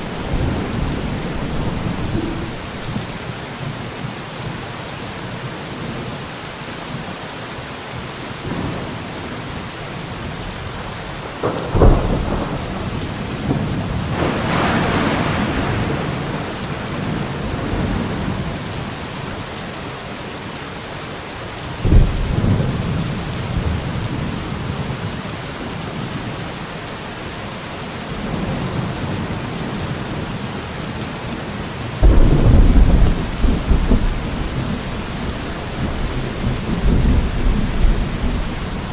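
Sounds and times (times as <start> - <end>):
close thunderclaps: 0.0 - 3.5, 11.4 - 18.9, 32.0 - 38.9
rolling thunder rumble: 0.0 - 3.8, 11.4 - 18.9, 32.0 - 38.9
steady rain hiss: 0.0 - 38.9.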